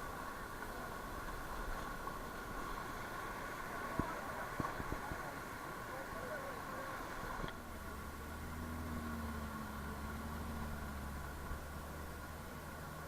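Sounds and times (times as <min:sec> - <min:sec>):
vehicle engine idling: 0:05.3 - 0:13.0.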